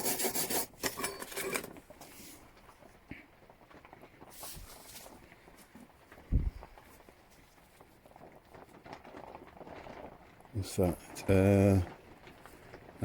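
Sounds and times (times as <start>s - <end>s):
spanner being handled: 0.4s - 1.7s.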